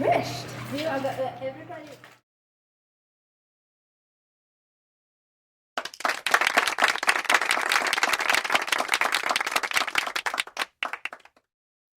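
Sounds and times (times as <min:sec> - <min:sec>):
small group clapping: 0:05.8 - 0:11.5.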